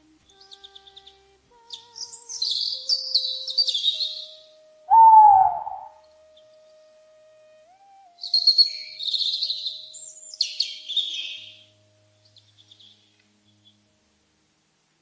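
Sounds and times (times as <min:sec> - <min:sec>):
birds chirping: 0:00.0 - 0:06.8, 0:08.1 - 0:13.9
faint background music: 0:00.0 - 0:15.0
loud falling bird call: 0:01.8 - 0:06.0.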